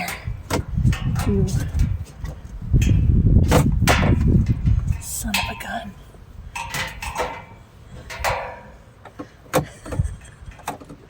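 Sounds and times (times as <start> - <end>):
sharp knocks: 2.8 - 4.5.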